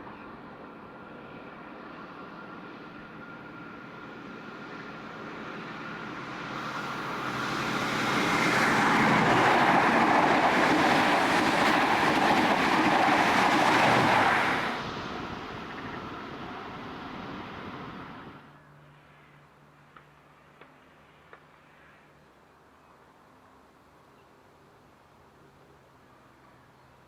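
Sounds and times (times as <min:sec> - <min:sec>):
diesel passenger train passing: 0:00.2 - 0:20.0
train wheels on rails: 0:03.8 - 0:18.3.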